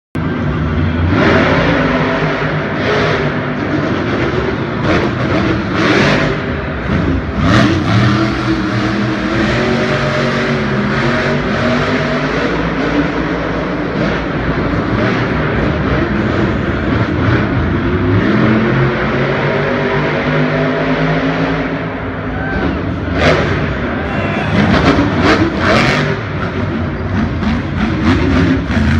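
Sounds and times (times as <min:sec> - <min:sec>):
truck engine revving: 0:00.2 - 0:28.9.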